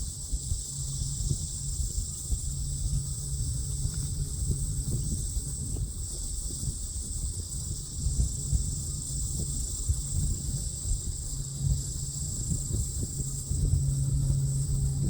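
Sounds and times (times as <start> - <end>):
distant propeller plane drone: 0.0 - 15.0
wind rumble on microphone: 0.0 - 15.0.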